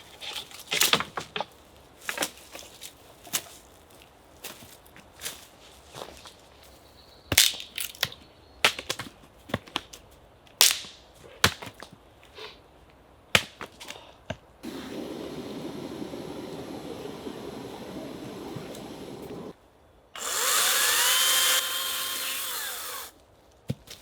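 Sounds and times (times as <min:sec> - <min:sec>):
power tool motor running: 0:14.6 - 0:19.5, 0:20.2 - 0:23.1.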